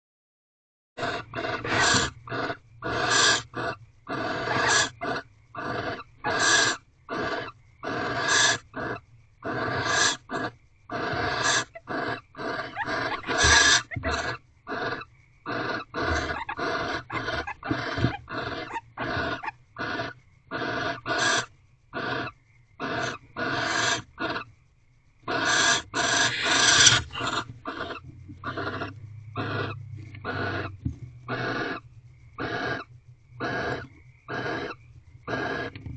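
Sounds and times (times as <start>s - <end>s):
barn owls hissing calls: 1.0s - 24.5s, 25.2s - 35.8s.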